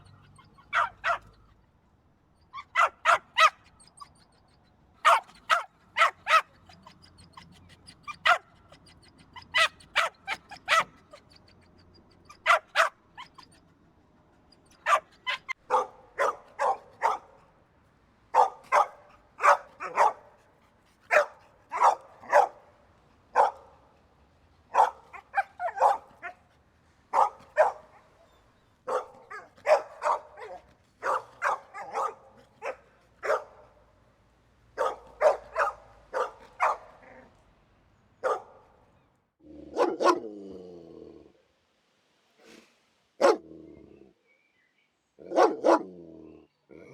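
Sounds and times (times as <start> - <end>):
dog barking: 0.0 - 1.5, 2.5 - 4.4, 5.0 - 13.6, 14.6 - 17.5, 18.3 - 20.4, 21.1 - 22.7, 23.3 - 23.8, 24.7 - 26.4, 27.1 - 28.2, 28.8 - 33.8, 34.8 - 37.3, 38.2 - 38.8, 39.6 - 40.3, 43.2 - 43.5, 45.2 - 46.0.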